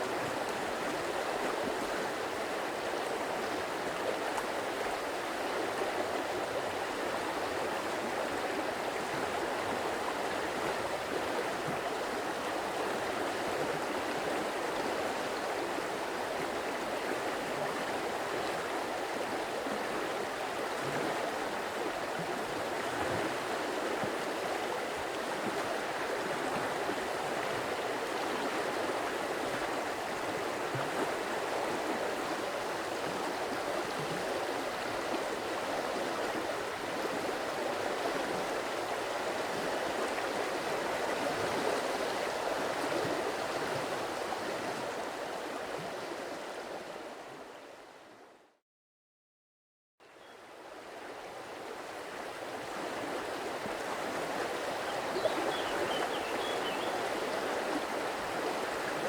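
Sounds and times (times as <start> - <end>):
stream flowing: 0.0 - 48.2, 50.3 - 59.0.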